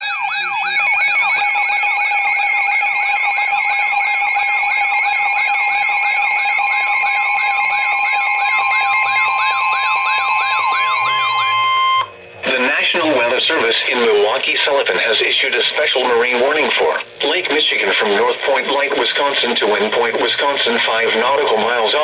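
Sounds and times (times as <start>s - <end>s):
electronic siren tone sweeping: 0.0s - 12.1s
steady alert tone: 8.7s - 12.1s.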